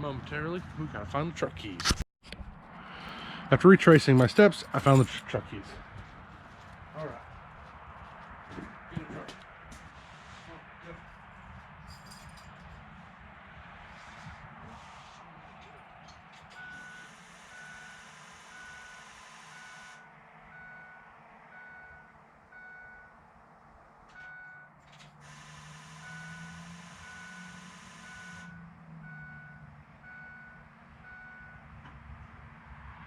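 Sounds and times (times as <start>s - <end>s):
truck warning chime beeping: 15.6s - 31.8s.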